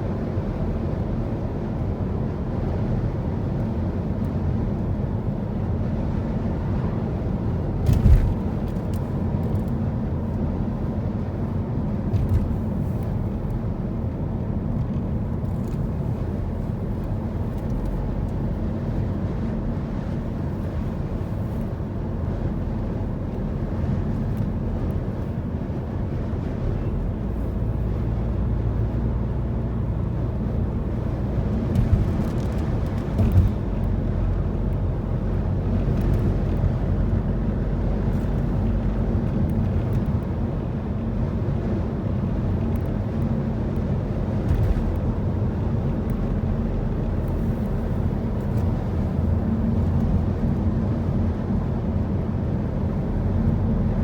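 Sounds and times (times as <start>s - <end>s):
road and wind noise: 0.0s - 54.0s
car driving rumble: 0.1s - 54.0s.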